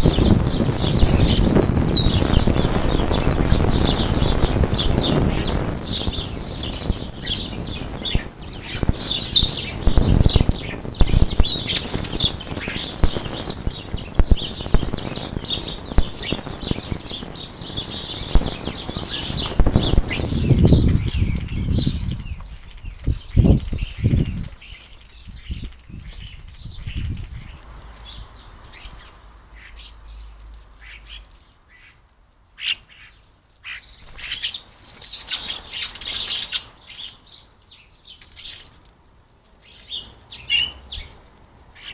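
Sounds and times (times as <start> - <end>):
wings flapping and splashing: 0.0 - 32.0, 33.6 - 37.0
bird whistles and chirps: 1.1 - 3.2, 5.8 - 13.6, 34.2 - 37.1.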